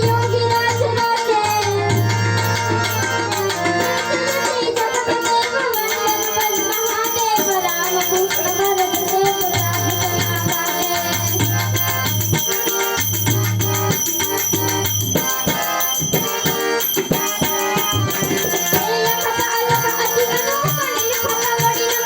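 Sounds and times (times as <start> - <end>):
melody over percussion: 5.9 - 22.0.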